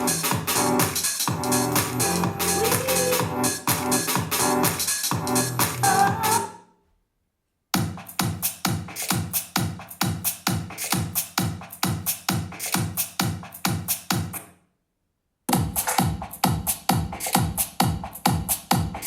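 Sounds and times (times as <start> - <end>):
electronic dance music: 0.0 - 6.6.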